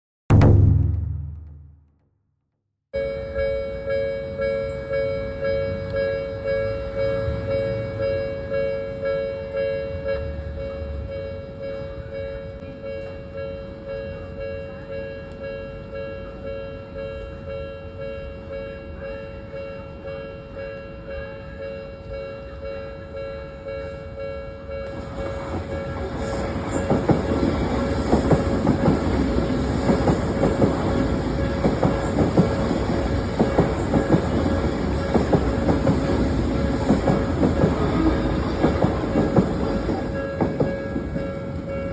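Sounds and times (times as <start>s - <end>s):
train passing with rush: 3.1s - 41.9s
wheels clattering over rail joints: 24.9s - 41.8s.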